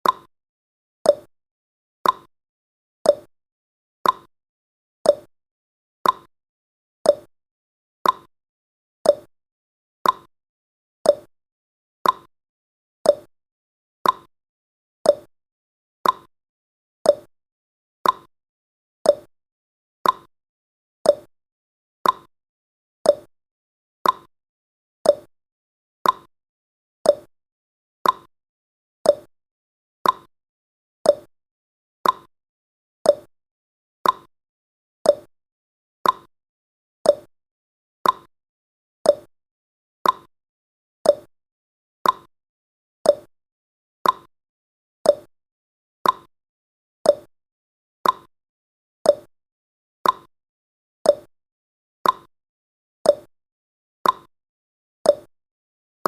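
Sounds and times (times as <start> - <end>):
timer ticking: 0.0 - 0.3, 1.1 - 1.3, 2.0 - 2.3, 3.1 - 3.3, 4.0 - 4.3, 5.1 - 5.3, 6.0 - 6.3, 7.1 - 7.3, 8.0 - 8.3, 9.1 - 9.3, 10.0 - 10.3, 11.1 - 11.3, 12.0 - 12.3, 13.1 - 13.3, 14.0 - 14.3, 15.1 - 15.3, 16.0 - 16.3, 17.1 - 17.3, 18.0 - 18.3, 19.1 - 19.3, 20.0 - 20.3, 21.1 - 21.3, 22.0 - 22.3, 23.1 - 23.3, 24.0 - 24.3, 25.0 - 25.3, 26.0 - 26.3, 27.1 - 27.3, 28.0 - 28.3, 29.0 - 29.3, 30.0 - 30.3, 31.1 - 31.3, 32.0 - 32.3, 33.1 - 33.3, 34.0 - 34.3, 35.0 - 35.3, 36.0 - 36.3, 37.0 - 37.3, 38.0 - 38.3, 39.1 - 39.3, 40.0 - 40.3, 41.0 - 41.3, 42.0 - 42.3, 43.1 - 43.3, 44.0 - 44.3, 45.1 - 45.3, 46.0 - 46.3, 47.1 - 47.3, 48.0 - 48.3, 49.1 - 49.3, 50.0 - 50.3, 51.1 - 51.3, 52.0 - 52.3, 53.1 - 53.3, 54.0 - 54.3, 55.1 - 55.3.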